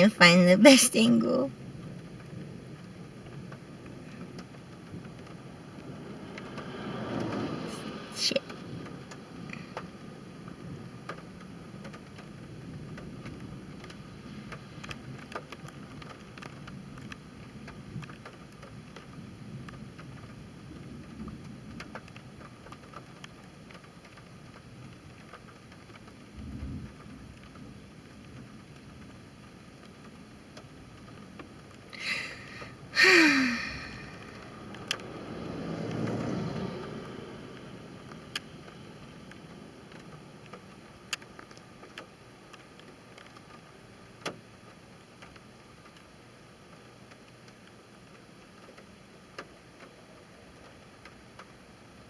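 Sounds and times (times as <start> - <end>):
raindrops ticking on car: 0.1 - 52.0
rain hissing: 31.1 - 42.6
person drawing a quick breath: 32.0 - 33.9
person sighing: 32.0 - 34.3.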